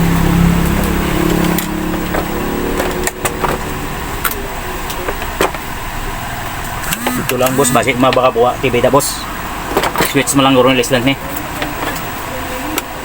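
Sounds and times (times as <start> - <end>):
low steady hum: 0.2 - 8.9.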